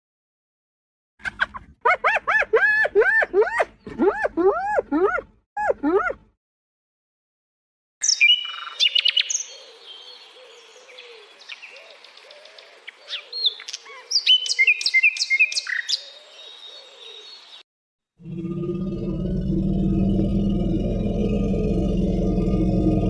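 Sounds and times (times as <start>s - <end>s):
birds chirping and whistling: 8.0s - 17.4s.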